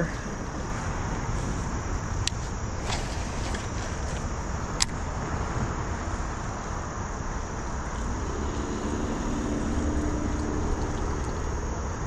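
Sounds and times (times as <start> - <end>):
tyre rumble: 0.0 - 4.8
vehicle engine hum: 0.0 - 12.0.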